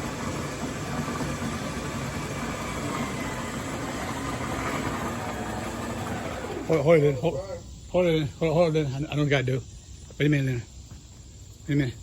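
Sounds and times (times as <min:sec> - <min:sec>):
motor humming: 0:00.0 - 0:07.4.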